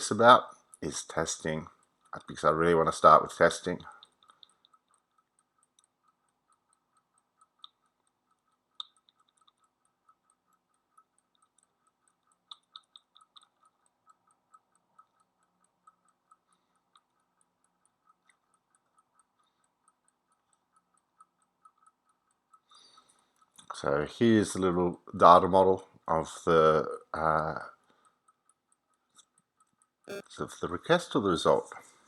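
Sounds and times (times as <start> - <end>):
faint even ticking: 0.0 - 30.2.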